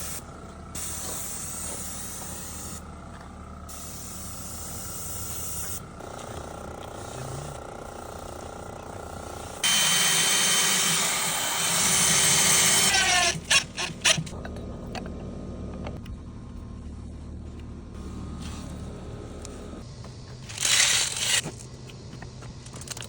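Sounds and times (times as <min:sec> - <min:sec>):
low background hum: 0:00.0 - 0:10.2, 0:10.8 - 0:23.0
power drill whining: 0:09.6 - 0:14.4.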